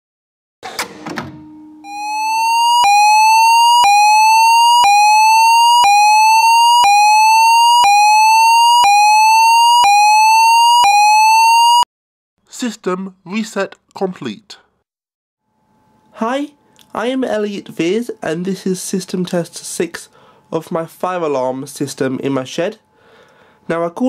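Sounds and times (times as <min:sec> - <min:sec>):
fire alarm rising sweep tone: 0:01.8 - 0:11.9.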